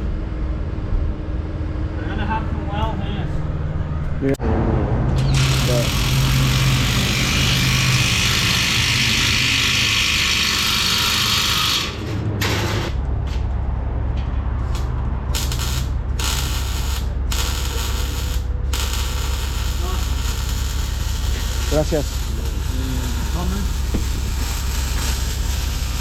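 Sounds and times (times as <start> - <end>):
low hum: 0.0 - 10.1, 12.0 - 26.0
welding hiss: 5.3 - 13.0, 14.7 - 26.0.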